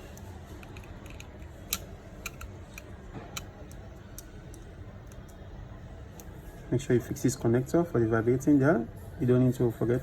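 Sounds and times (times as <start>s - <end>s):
small tools clicking and tapping: 0.1s - 5.4s.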